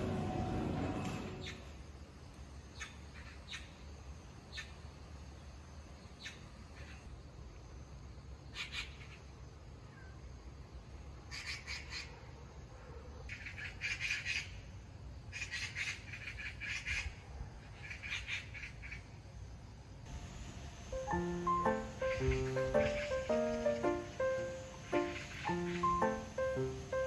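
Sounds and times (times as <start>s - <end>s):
bird chirping: 0.0s - 1.7s, 20.9s - 27.0s
low background hum: 0.0s - 1.8s, 19.8s - 27.0s.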